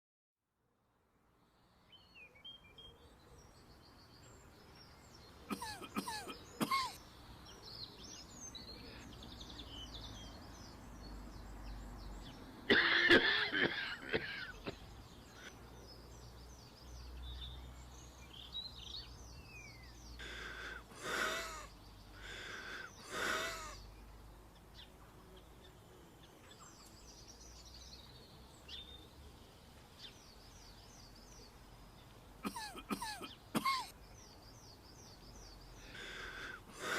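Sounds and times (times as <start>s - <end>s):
small birds chirping: 1.3s - 36.9s
person coughing: 5.5s - 7.0s, 12.7s - 14.8s, 32.5s - 33.9s.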